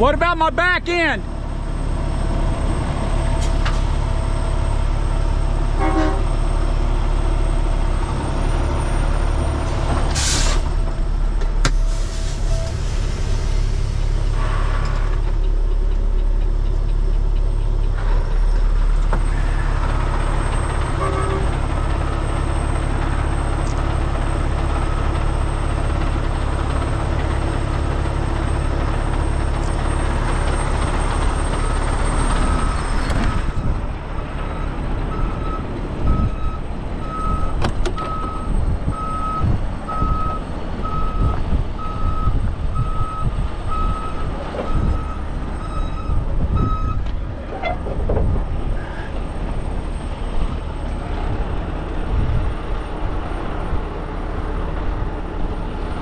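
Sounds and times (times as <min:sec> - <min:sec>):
truck engine running: 0:00.0 - 0:56.0
wind buffeting microphone: 0:30.2 - 0:56.0
backup alarm beeping: 0:34.5 - 0:47.0.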